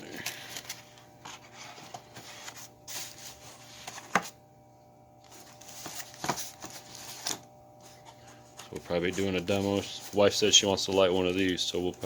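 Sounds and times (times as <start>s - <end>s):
box rustling and rubbing: 0.7s - 4.4s, 5.3s - 11.6s.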